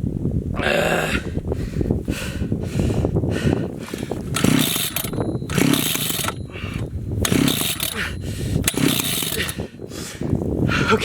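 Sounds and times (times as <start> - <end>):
chainsaw pull-start cranking: 3.9 - 9.8.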